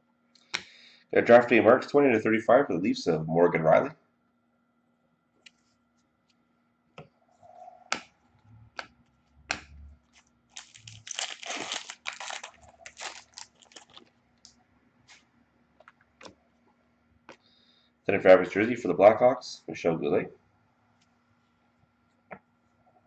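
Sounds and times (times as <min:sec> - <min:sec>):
cards and packaging crinkling: 0:10.0 - 0:14.5.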